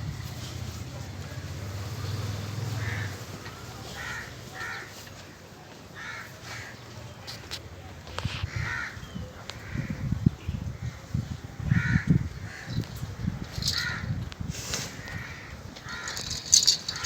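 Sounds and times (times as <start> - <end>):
crow cawing: 2.8 - 3.1, 3.9 - 4.9, 6.0 - 6.7, 11.7 - 12.7, 13.7 - 14.1, 15.0 - 17.0.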